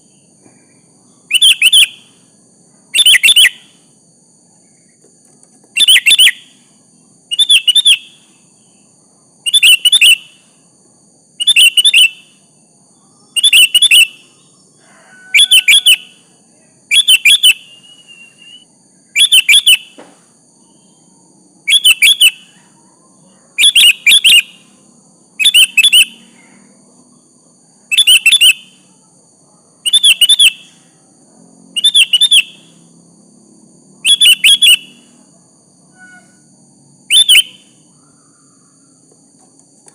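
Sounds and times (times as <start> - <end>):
bulbul chirping: 1.3 - 2.1, 3.0 - 3.7, 5.7 - 6.6, 7.3 - 8.3, 9.5 - 10.4, 11.4 - 12.4, 13.4 - 14.3, 16.9 - 18.6, 19.2 - 20.0, 21.7 - 22.5, 23.6 - 24.6, 25.4 - 26.2, 27.9 - 28.8, 29.8 - 30.7, 31.8 - 32.7, 34.0 - 35.1, 37.1 - 37.8.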